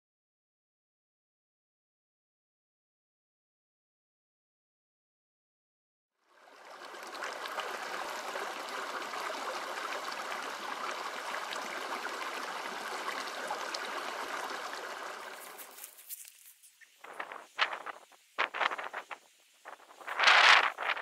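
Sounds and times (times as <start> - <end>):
stream water flowing: 6.2 - 21.0.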